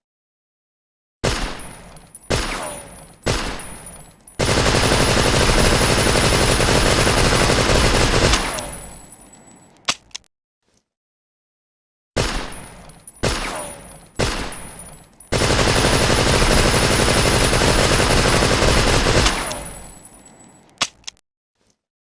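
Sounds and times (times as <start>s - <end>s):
submachine gun shots: 2.3s - 3.8s, 4.4s - 9.0s, 13.2s - 14.7s, 15.3s - 20.0s
automatic gunfire burst: 4.4s - 8.9s, 15.3s - 19.9s.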